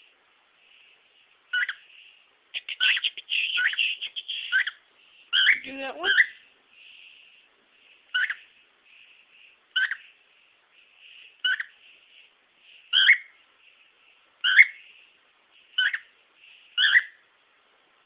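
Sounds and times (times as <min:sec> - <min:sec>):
soft bird chirps: 0:00.6 - 0:17.3
cockatiel whistled calls: 0:01.5 - 0:01.8, 0:02.8 - 0:06.4, 0:08.1 - 0:08.4, 0:09.8 - 0:10.0, 0:11.4 - 0:11.7, 0:12.9 - 0:13.4, 0:14.4 - 0:14.8, 0:15.8 - 0:16.1, 0:16.8 - 0:17.2.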